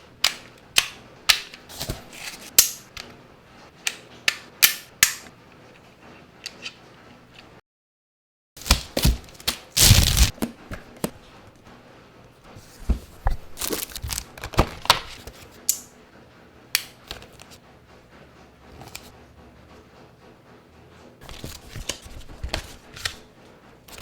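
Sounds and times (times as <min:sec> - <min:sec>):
packaging rustling and scraping: 0:01.7 - 0:02.6, 0:08.6 - 0:10.4, 0:12.6 - 0:15.6.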